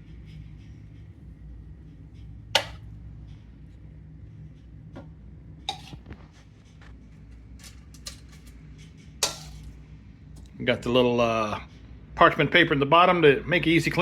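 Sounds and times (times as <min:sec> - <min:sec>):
low steady hum: 0:00.0 - 0:14.0
kitchen clicks and knocks: 0:02.6 - 0:02.9, 0:05.7 - 0:06.1, 0:07.6 - 0:08.6, 0:09.2 - 0:09.7.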